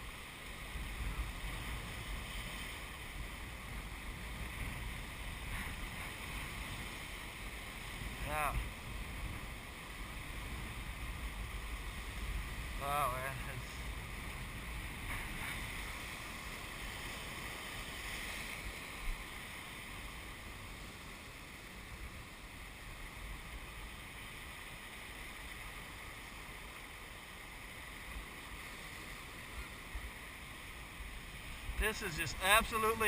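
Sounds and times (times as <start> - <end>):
wind rumbling on microphone: 0.0 - 26.6.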